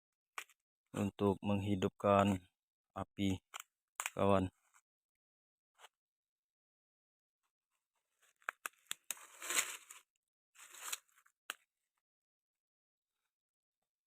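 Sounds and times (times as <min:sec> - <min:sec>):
firewood crunching and crackling: 0:08.4 - 0:10.0, 0:10.6 - 0:11.3
sticks snapping: 0:08.4 - 0:10.0.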